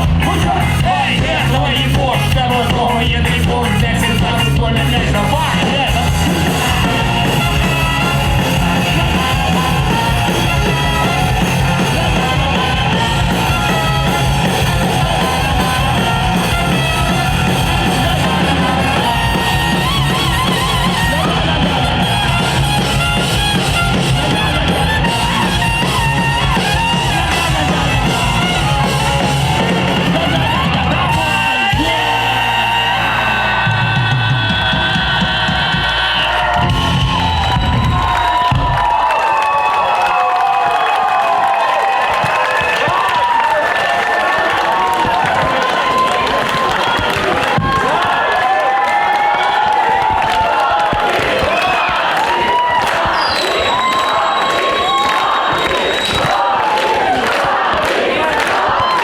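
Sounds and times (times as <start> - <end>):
live rock band playing: 0.0 - 39.1.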